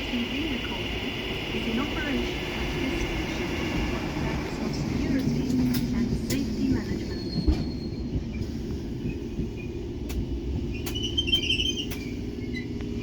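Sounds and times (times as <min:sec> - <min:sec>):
train rumbling: 0:00.0 - 0:13.0
high squeal: 0:10.7 - 0:12.8.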